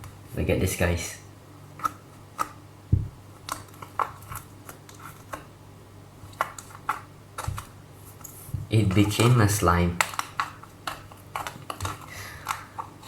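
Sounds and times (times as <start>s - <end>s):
dull thump: 2.9s - 3.2s.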